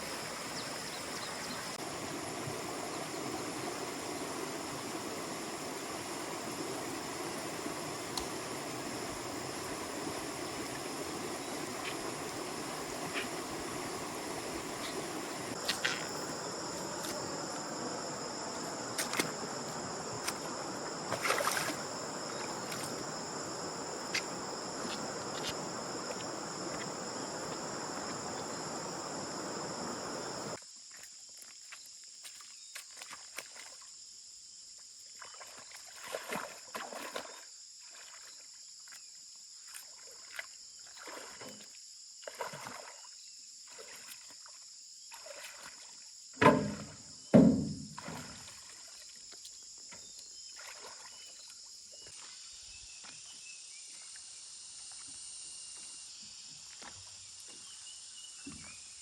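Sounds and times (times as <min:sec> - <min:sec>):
insects droning: 0:00.0 - 0:59.0
water rushing: 0:01.8 - 0:30.6
water sloshing and splashing: 0:10.1 - 0:31.5, 0:35.1 - 0:39.0, 0:39.7 - 0:52.4
sharp knocks: 0:46.4 - 0:47.9.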